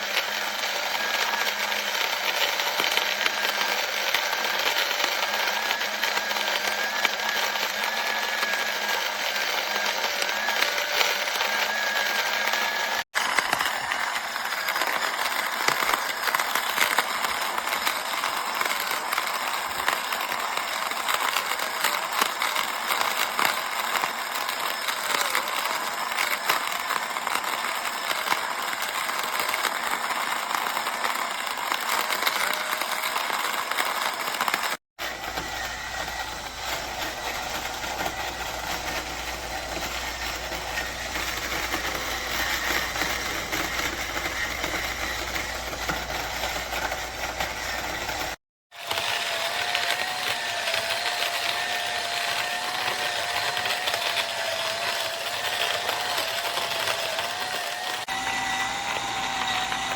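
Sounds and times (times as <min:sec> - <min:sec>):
coffee grinder grinding beans: 0:00.0 - 0:59.9
mechanical whir with low hum: 0:35.0 - 0:48.4.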